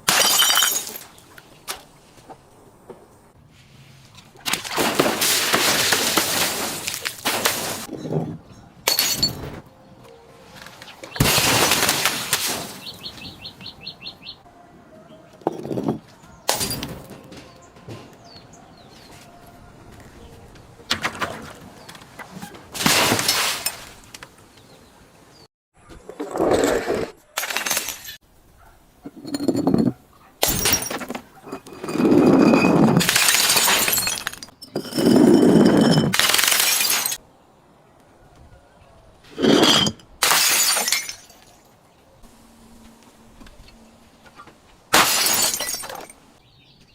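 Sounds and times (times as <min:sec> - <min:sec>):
glass breaking and crushing: 0:00.0 - 0:01.2, 0:04.5 - 0:07.9, 0:08.9 - 0:09.5, 0:11.0 - 0:13.2, 0:15.6 - 0:17.6, 0:22.8 - 0:24.0, 0:27.4 - 0:28.2, 0:29.1 - 0:37.2, 0:39.4 - 0:41.7, 0:44.9 - 0:46.2
crunching hits: 0:11.1 - 0:13.4
loud smashing crash: 0:11.2 - 0:13.2, 0:22.8 - 0:23.8
bird chirping: 0:12.8 - 0:15.3.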